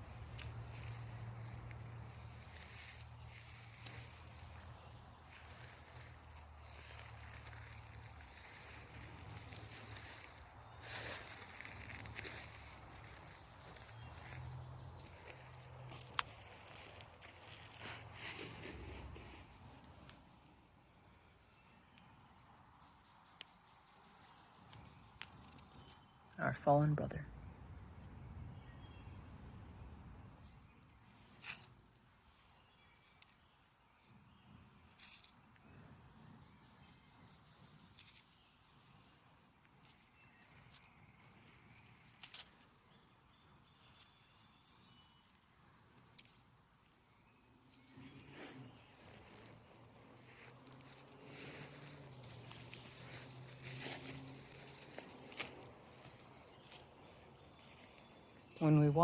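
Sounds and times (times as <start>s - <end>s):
insect trilling: 0.0s - 20.5s, 39.8s - 59.0s.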